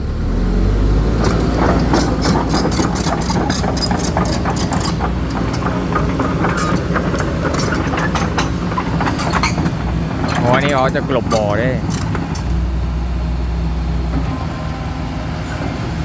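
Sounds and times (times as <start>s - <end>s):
excavator diesel engine running: 0.0s - 16.0s
metallic clanks and rattles: 1.2s - 12.7s.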